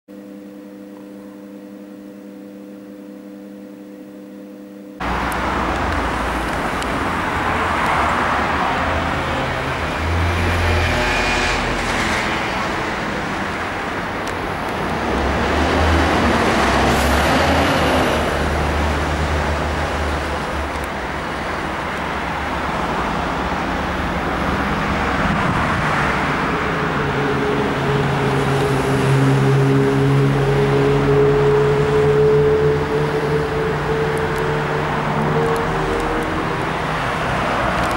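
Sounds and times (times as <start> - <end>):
quiet steady hum: 0.2 - 5.0
jet plane passing overhead: 5.0 - 20.6.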